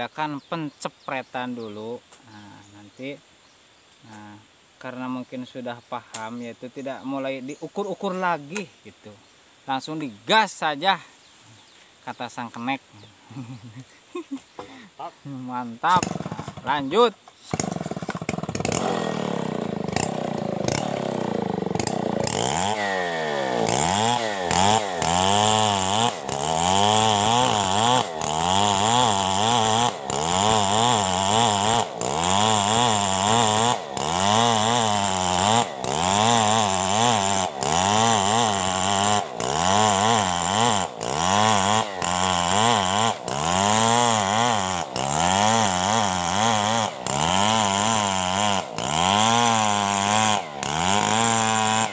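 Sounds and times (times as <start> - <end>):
chainsaw cutting wood: 15.8 - 51.9.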